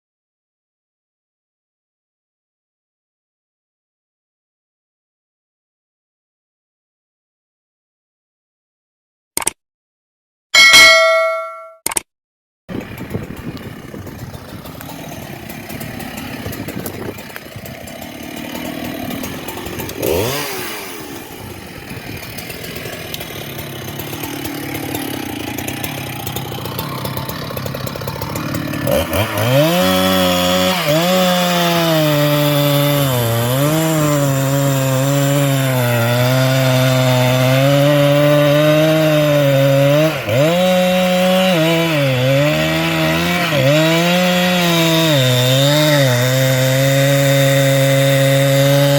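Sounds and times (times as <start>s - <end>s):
chainsaw cutting wood: 12.7s - 48.9s.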